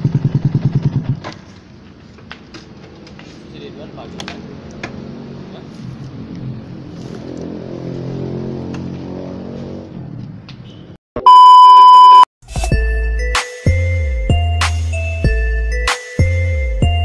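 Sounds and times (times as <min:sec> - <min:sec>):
motorcycle engine running: 0:00.0 - 0:01.8
loud electronic beep: 0:11.2 - 0:12.3
music: 0:12.4 - 0:17.0.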